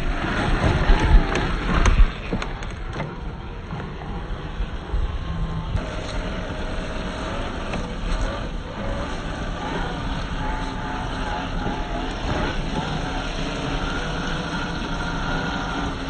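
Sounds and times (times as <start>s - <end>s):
electric motor whine: 0.0s - 16.0s
steady low rumble: 0.0s - 16.0s.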